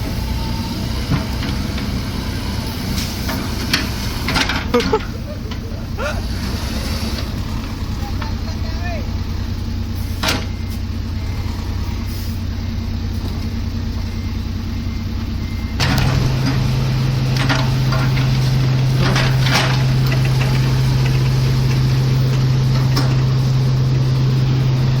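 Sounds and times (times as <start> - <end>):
heavy machine engine running: 0.0 - 25.0
knocks and clanks: 3.2 - 8.4, 15.8 - 23.5.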